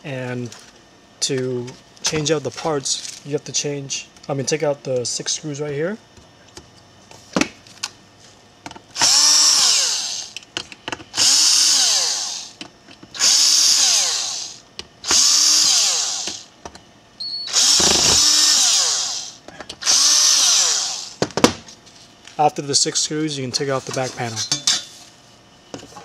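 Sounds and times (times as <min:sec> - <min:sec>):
power screwdriver whine: 0:09.0 - 0:10.4, 0:11.1 - 0:12.6, 0:13.2 - 0:16.5, 0:17.3 - 0:21.2.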